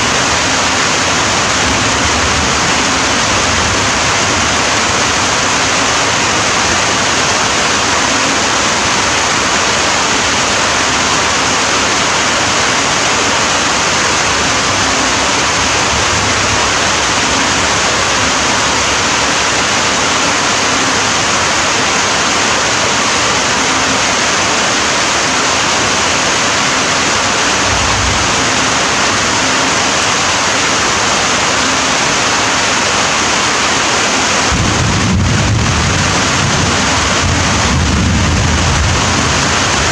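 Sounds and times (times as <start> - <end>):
steady rain falling: 0.0 - 39.9
low rumble: 27.5 - 29.4, 34.5 - 39.9.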